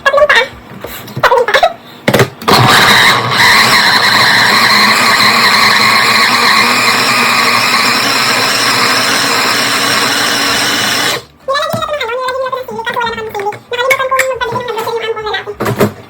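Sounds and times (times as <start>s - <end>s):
blender motor whine: 2.5s - 11.3s.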